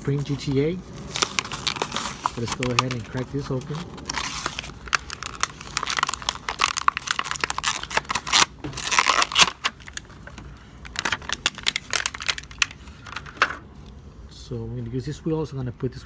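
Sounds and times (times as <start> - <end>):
plastic packaging crackling and tearing: 0.0 - 13.4.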